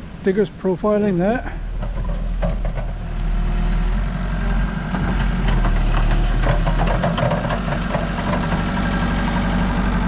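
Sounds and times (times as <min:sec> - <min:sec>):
digger diesel engine running: 0:01.6 - 0:10.0
machine clanks and scrapes: 0:01.8 - 0:03.5, 0:04.9 - 0:09.0.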